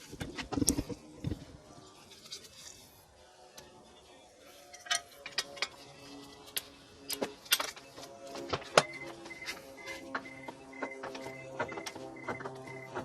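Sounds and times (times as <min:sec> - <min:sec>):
metal tools clicking and clinking: 0:04.7 - 0:05.9.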